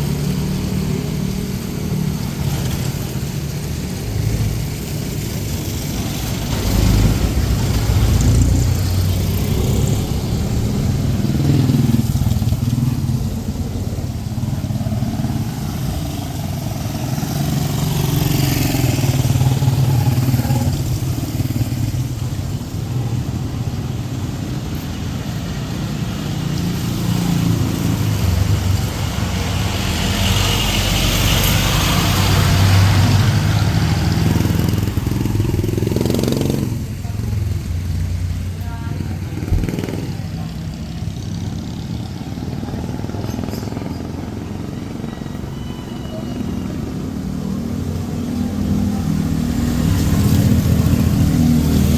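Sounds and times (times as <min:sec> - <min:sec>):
motorcycles and cars passing: 0:00.0 - 0:51.9
rain hissing: 0:00.1 - 0:35.6.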